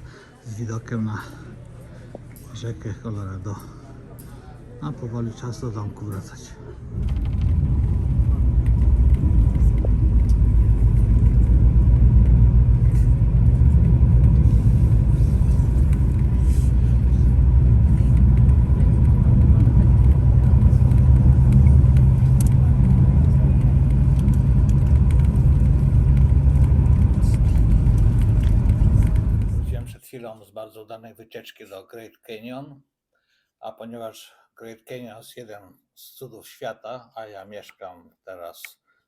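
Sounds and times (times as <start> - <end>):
bus engine and road noise: 0.0 - 30.0
faint hum: 0.0 - 30.0.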